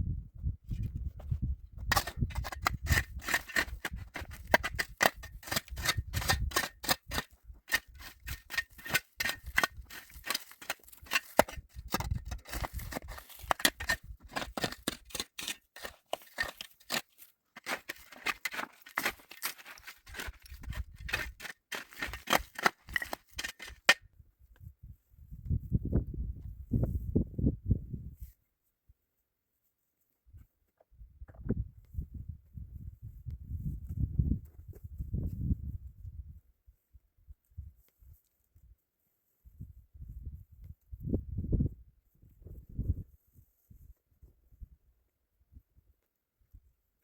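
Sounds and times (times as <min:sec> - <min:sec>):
wind rumble on microphone: 0:00.0 - 0:04.9, 0:24.2 - 0:28.3, 0:31.0 - 0:38.2, 0:39.4 - 0:44.9.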